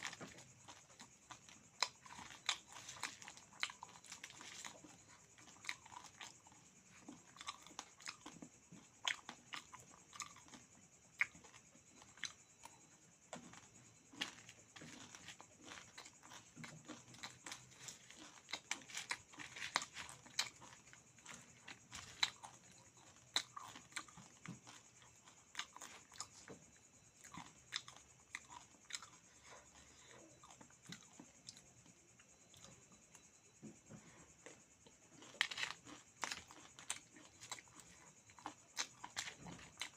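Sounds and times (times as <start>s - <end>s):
person chewing crunchy food: 0.0s - 39.9s.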